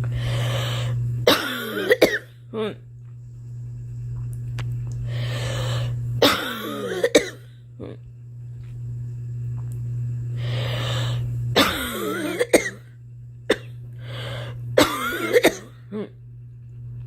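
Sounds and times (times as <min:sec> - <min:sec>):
girl coughing: 0:01.3 - 0:02.3, 0:06.2 - 0:08.0, 0:11.6 - 0:12.8, 0:14.8 - 0:16.1.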